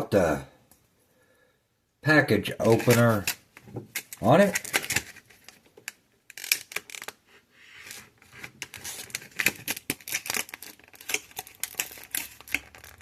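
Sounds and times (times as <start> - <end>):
blade scratching plastic packaging: 2.6 - 3.4, 6.3 - 7.2, 7.8 - 13.0.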